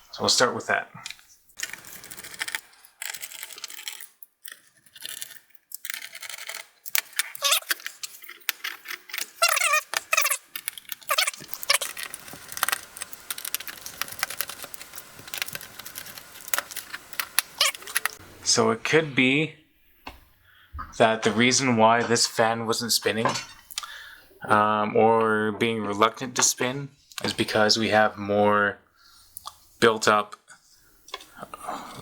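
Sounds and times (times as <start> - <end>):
loose screws rattling: 1.6 - 18.2
short squeaks: 7.2 - 8.0, 9.2 - 18.2.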